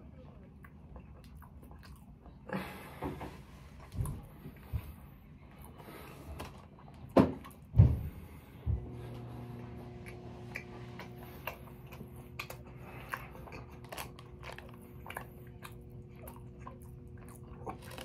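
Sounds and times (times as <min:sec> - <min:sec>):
close-up chewing: 0:00.0 - 0:18.0
low hum: 0:03.8 - 0:18.0.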